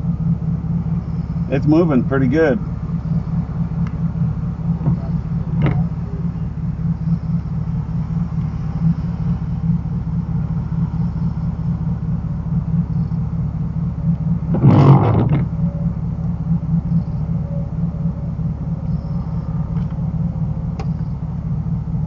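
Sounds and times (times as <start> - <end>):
vehicle engine idling: 0.0 - 22.0.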